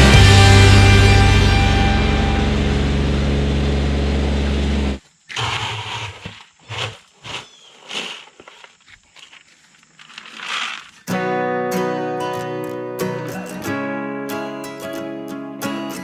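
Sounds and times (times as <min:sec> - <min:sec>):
rock music: 0:00.0 - 0:05.0, 0:11.1 - 0:16.0
scrapes and knocks: 0:05.3 - 0:11.1.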